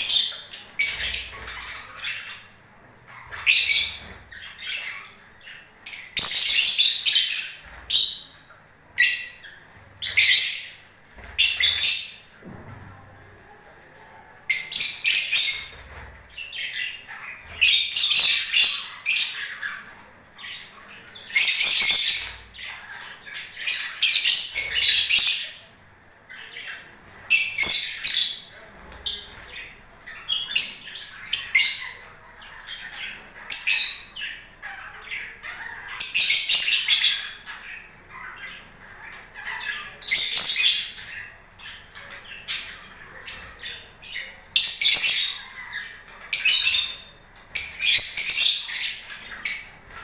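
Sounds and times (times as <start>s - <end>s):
lovebirds squawking: 0.0s - 12.3s
quiet bird chattering: 0.0s - 50.0s.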